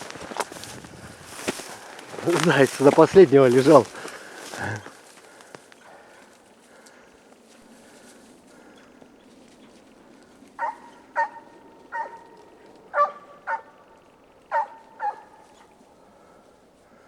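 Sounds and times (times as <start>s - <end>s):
hound baying: 5.8s - 6.9s, 7.5s - 16.6s.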